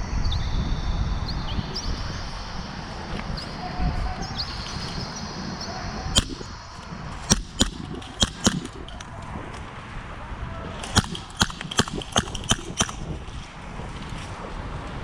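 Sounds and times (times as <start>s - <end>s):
birds chirping: 0.0s - 9.2s, 10.8s - 13.4s
wind rumbling on microphone: 0.0s - 15.0s
airsoft gunshots: 6.2s - 9.2s, 10.8s - 13.6s.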